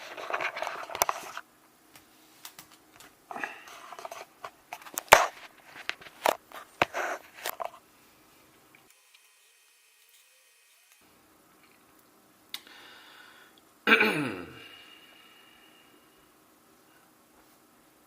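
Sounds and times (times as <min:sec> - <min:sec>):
rustling: 0:02.0 - 0:12.1.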